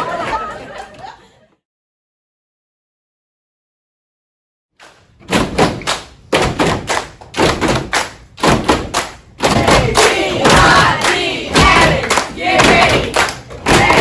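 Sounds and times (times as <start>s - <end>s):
group stomping and clapping: 5.2s - 14.0s.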